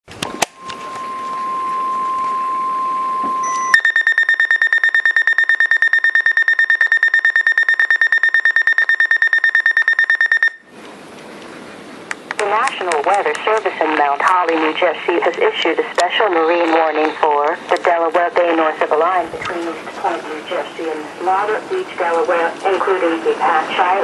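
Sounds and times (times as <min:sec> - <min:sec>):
steady alert tone: 0:00.4 - 0:10.7
rapid high pulsing beep: 0:00.6 - 0:10.7.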